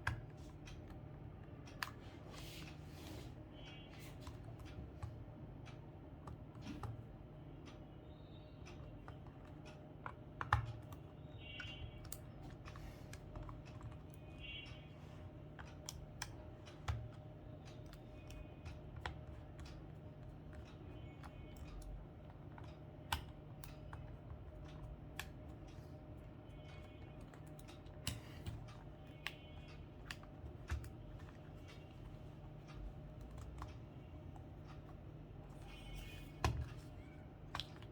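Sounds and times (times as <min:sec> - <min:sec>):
plastic calculator parts clicking: 0:08.6 - 0:37.9.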